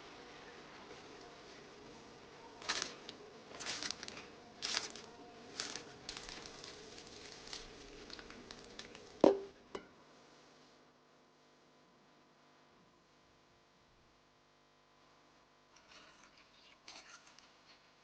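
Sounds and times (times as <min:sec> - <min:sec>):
rustles and scrapes: 0:02.6 - 0:09.1.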